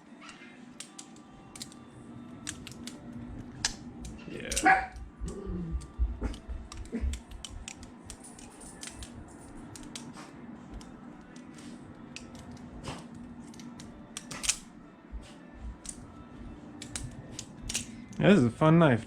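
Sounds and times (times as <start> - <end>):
butterfly knife clicking: 0.8 - 4.7, 5.3 - 12.7, 13.4 - 14.7, 16.8 - 18.2.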